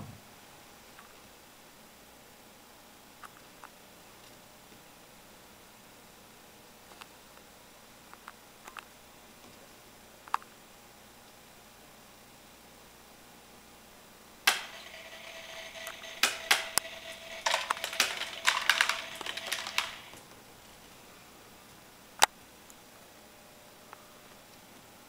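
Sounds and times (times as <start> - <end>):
faint motor hum: 0.0 - 25.0
cat feeder click: 14.5 - 15.0, 16.2 - 20.2
dry kibble rattling: 17.4 - 20.2.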